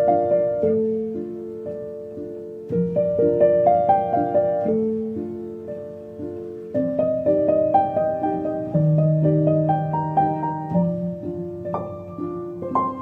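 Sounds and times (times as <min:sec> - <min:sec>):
gentle solo piano: 0:00.0 - 0:13.0.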